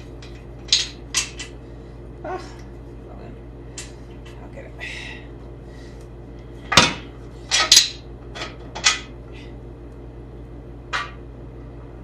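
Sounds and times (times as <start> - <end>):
metal parts clanking: 6.7 - 9.0.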